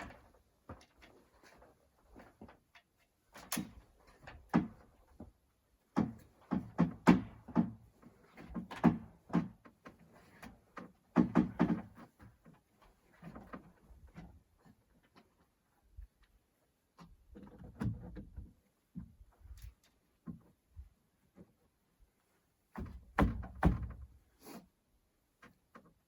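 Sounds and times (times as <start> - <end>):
knocks and thuds on wood: 4.3 - 9.8, 11.0 - 12.4, 22.7 - 24.2.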